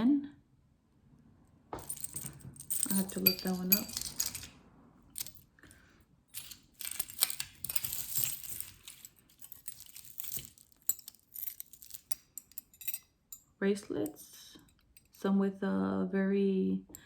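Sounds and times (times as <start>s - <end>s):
metal jewelry clinking: 1.8s - 15.3s.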